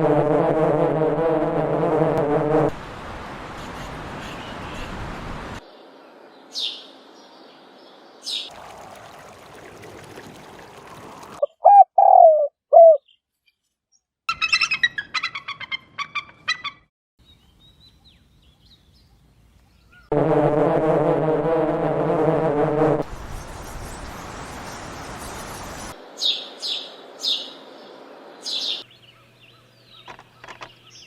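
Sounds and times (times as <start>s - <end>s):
birds calling: 23.2s - 31.0s.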